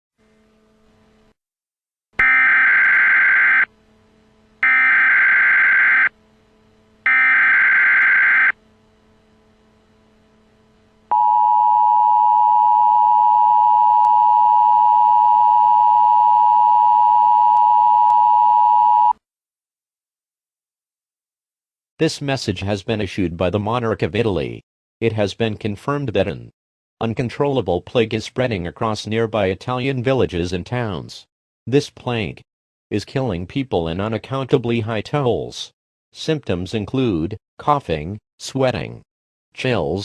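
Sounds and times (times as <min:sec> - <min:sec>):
two-tone attention signal: 0:04.6 - 0:06.1, 0:07.1 - 0:08.5.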